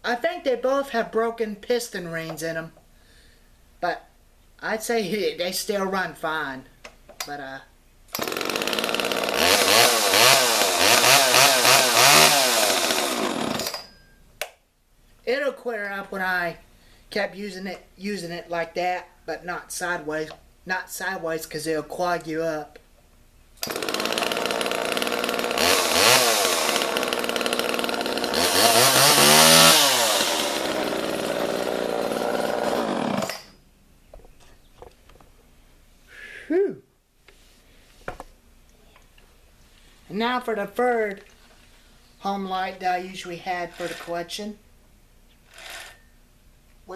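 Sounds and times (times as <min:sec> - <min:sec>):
chainsaw engine revving: 0:08.2 - 0:13.9, 0:23.6 - 0:33.6, 0:43.7 - 0:44.1.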